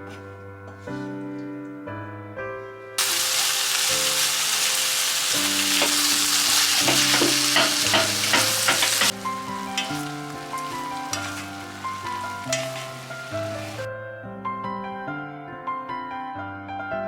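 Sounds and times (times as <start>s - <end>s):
soft piano music: 0.0s - 17.0s
food sizzling in a pan: 3.0s - 13.9s.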